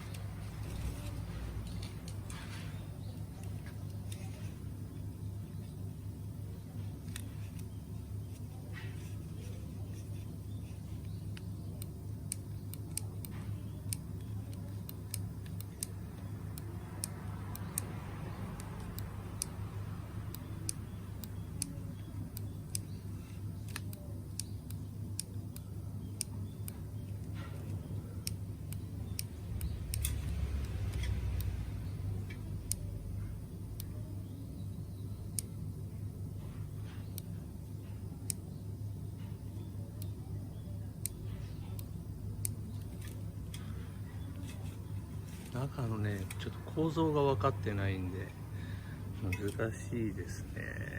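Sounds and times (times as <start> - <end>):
steady low hum: 0.0 - 50.9
sharp light ticks: 11.0 - 19.6, 20.2 - 22.9, 23.6 - 32.9, 35.3 - 35.6, 36.9 - 38.4.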